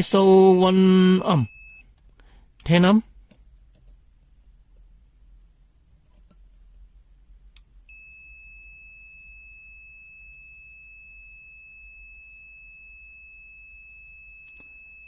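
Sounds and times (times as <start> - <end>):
multimeter continuous high-pitched beep: 0.6 - 2.0, 7.9 - 15.0.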